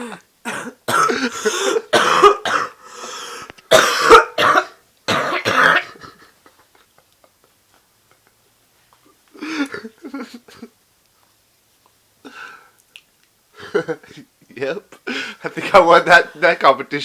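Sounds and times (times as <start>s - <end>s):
woman hacking cough: 0.0s - 2.8s, 3.7s - 6.1s.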